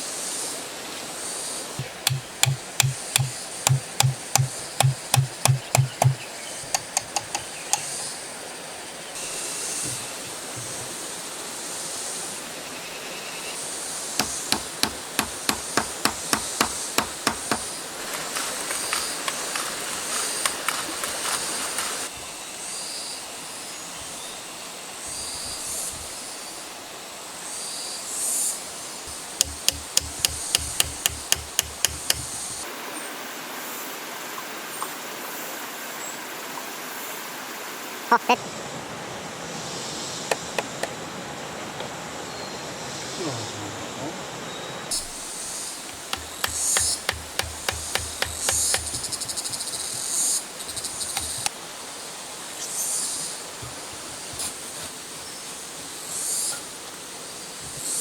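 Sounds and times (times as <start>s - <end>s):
sharp even hammer strikes: 1.8s - 7.9s, 14.2s - 17.6s, 29.1s - 32.6s, 45.9s - 51.5s
wood rasping: 1.8s - 7.9s, 14.2s - 17.7s, 29.1s - 32.6s, 45.8s - 51.5s, 53.5s - 54.9s.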